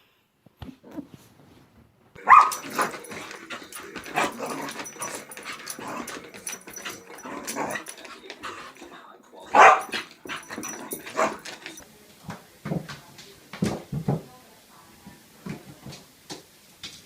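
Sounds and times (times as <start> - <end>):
dog barking: 2.2 - 11.8.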